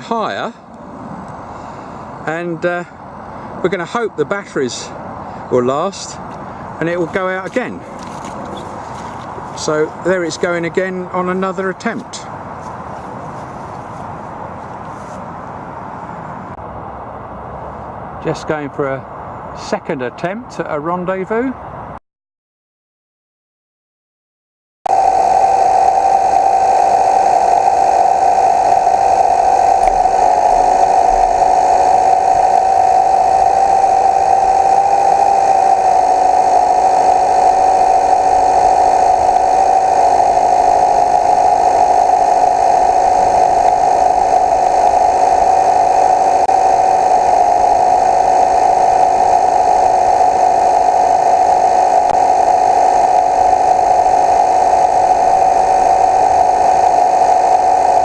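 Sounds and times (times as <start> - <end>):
model boat gearbox whine: 24.9 - 58.0.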